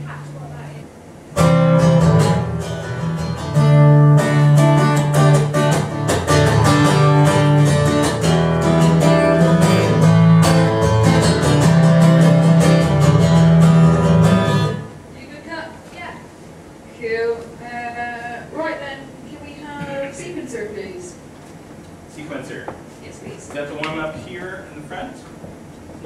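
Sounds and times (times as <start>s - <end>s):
acoustic guitar strumming chords: 1.3s - 15.0s.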